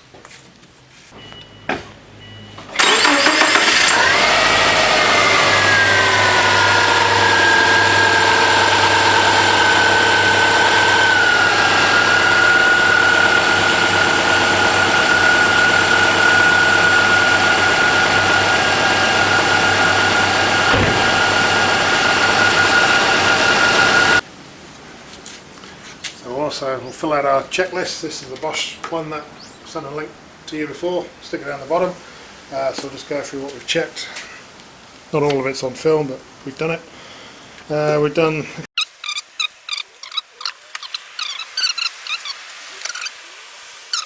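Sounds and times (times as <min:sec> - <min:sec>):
car engine starting and idling: 0:01.5 - 0:24.2.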